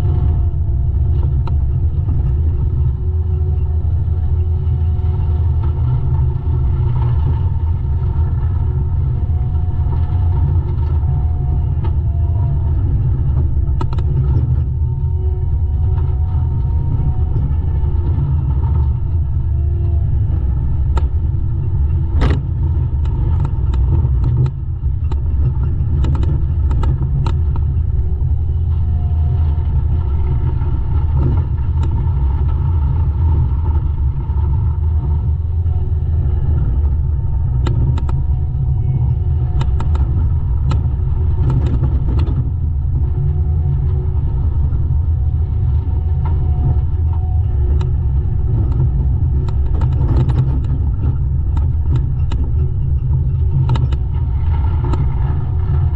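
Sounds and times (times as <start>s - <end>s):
diesel engine rumbling: 0.0s - 55.9s
sharp clicks and knocks: 8.2s - 29.0s, 29.6s - 32.7s, 36.4s - 44.0s, 45.8s - 55.9s.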